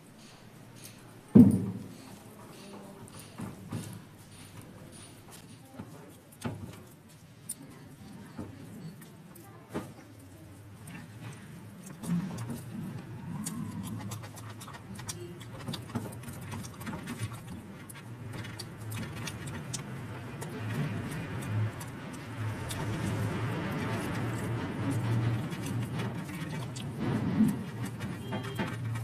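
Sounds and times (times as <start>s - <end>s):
chewing crunches and clicks: 10.8s - 29.0s.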